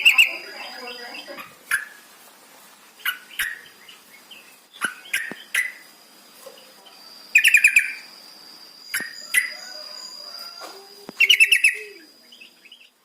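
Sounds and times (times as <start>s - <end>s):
bird chirping: 0.0s - 2.1s, 2.8s - 13.0s
faint steady high tone: 8.8s - 13.0s.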